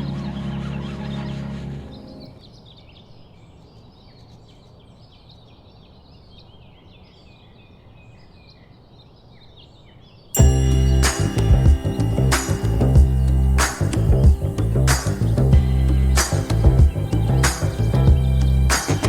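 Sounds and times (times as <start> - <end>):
birds chirping: 0.0 - 19.0
background hiss: 10.4 - 19.0
loud music: 10.4 - 19.0
saxophone music: 10.4 - 19.0.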